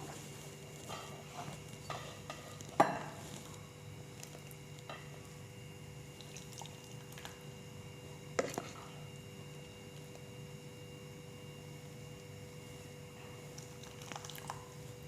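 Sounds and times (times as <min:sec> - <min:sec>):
faint steady hum: 0:00.0 - 0:15.0
liquid sounds: 0:06.1 - 0:07.4, 0:13.5 - 0:14.8.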